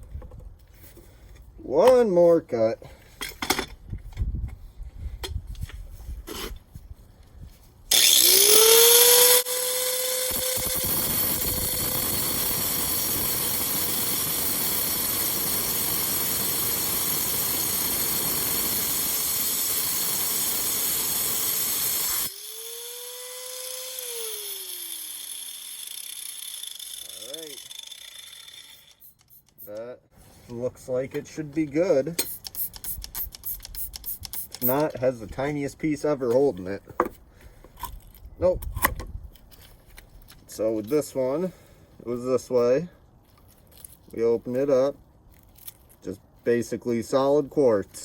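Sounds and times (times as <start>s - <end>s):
angle grinder cutting stone: 7.9s - 29.5s.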